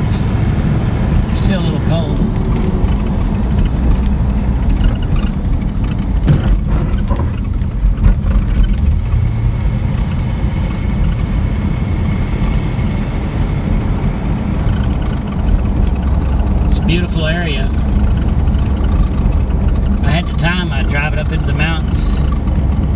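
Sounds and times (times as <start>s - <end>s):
car engine running: 0.0s - 22.9s
road noise: 0.0s - 22.9s
light engine knocks: 2.1s - 9.0s.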